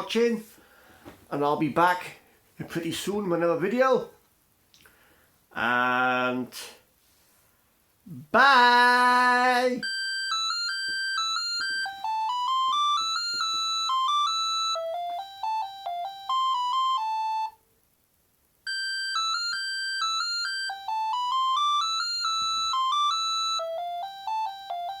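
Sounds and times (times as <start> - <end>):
mobile phone polyphonic ringtone: 9.8 - 17.6, 18.7 - 25.0.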